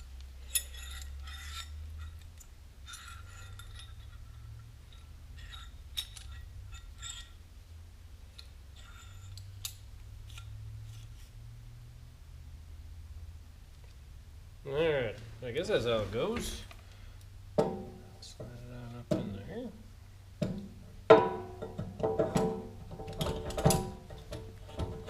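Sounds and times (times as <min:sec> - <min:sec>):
metal parts clinking and scraping: 0:00.0 - 0:07.5, 0:08.3 - 0:11.2
steady low hum: 0:00.0 - 0:25.0.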